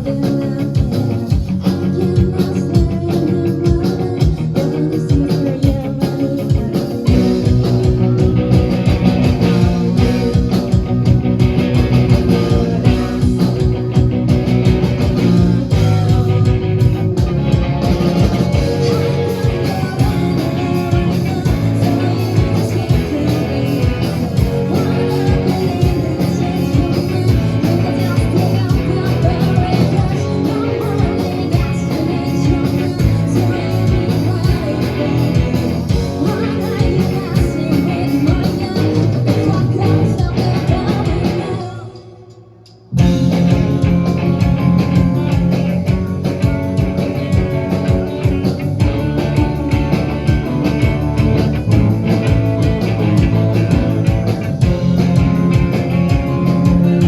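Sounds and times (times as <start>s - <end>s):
person singing: 0.0s - 10.9s, 12.0s - 13.7s, 18.0s - 42.5s
rock band playing live: 0.0s - 42.1s, 42.9s - 57.0s.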